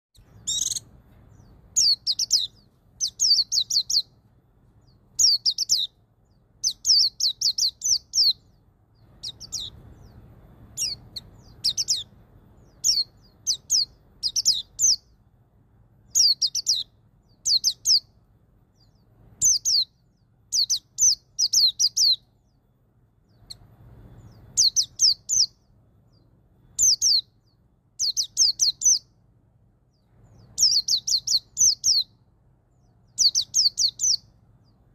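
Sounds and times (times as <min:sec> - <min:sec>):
bird singing high falling notes: 0:00.2 - 0:04.2, 0:04.8 - 0:15.2, 0:18.7 - 0:29.2.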